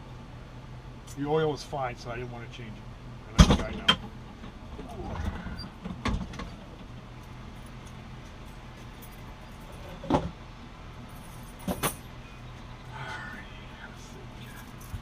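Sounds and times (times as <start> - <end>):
faint low hum: 11.0 - 15.0.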